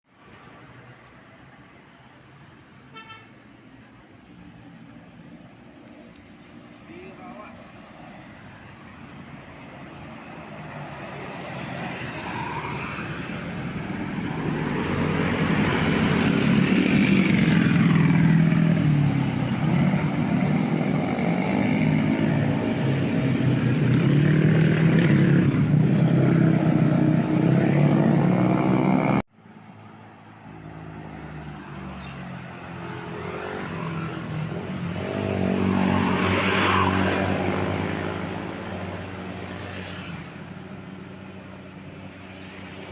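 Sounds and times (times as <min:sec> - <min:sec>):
bus passing by: 0:06.3 - 0:42.9
vehicle passing: 0:06.9 - 0:29.2.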